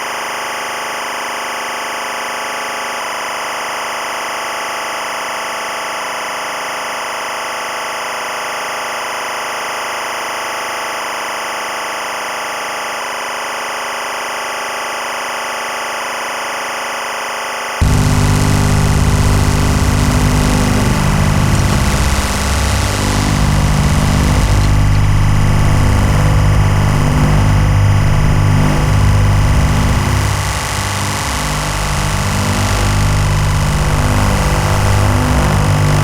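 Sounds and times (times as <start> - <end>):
electronic noise drone hiss: 17.8 - 36.0
faint repeating pulse: 17.8 - 36.0
low rumbling drone: 17.8 - 36.0.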